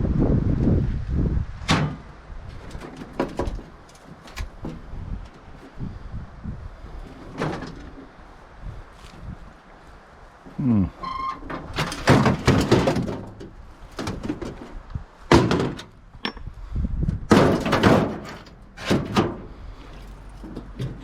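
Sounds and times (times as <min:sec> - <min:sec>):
metal clunks and knocks: 0:01.6 - 0:05.8, 0:07.0 - 0:08.2, 0:11.0 - 0:16.5, 0:17.3 - 0:21.0.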